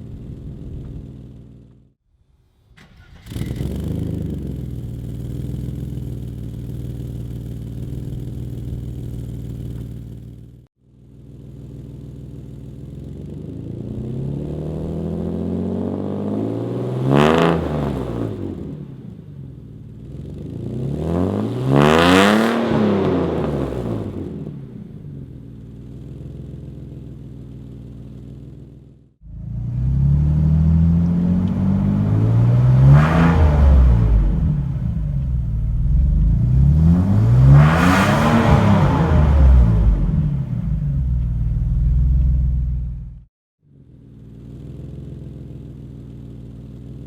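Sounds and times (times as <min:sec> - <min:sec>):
car engine idling and revving: 0:00.0 - 0:02.0, 0:02.8 - 0:47.0.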